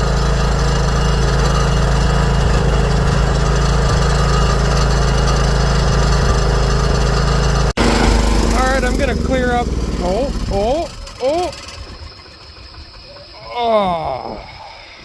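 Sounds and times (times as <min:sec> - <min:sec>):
lawn tractor engine running: 0:00.0 - 0:13.5.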